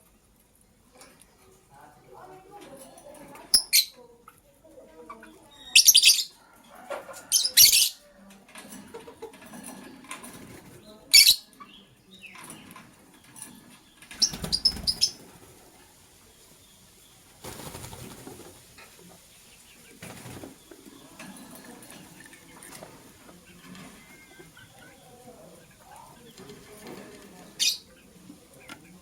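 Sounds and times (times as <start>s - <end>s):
lovebirds chirping: 2.1s - 6.5s, 7.2s - 8.1s, 10.8s - 29.0s
wing flapping: 14.1s - 15.7s, 17.3s - 18.9s, 19.9s - 24.0s.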